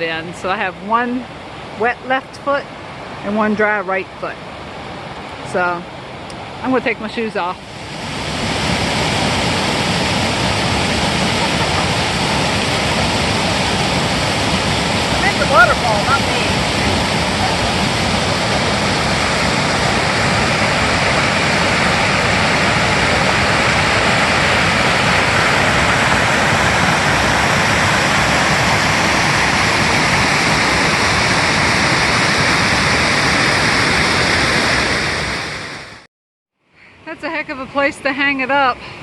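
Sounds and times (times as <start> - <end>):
waterfall rushing: 7.6 - 36.0.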